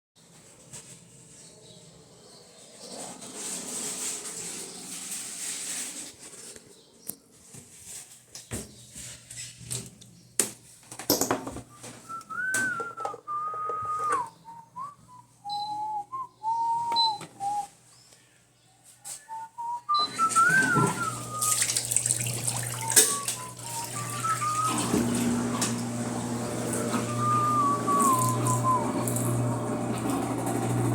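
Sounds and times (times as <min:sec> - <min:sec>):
person whistling a tune: 0:11.7 - 0:17.7, 0:19.2 - 0:21.7, 0:22.7 - 0:25.6, 0:26.9 - 0:29.0.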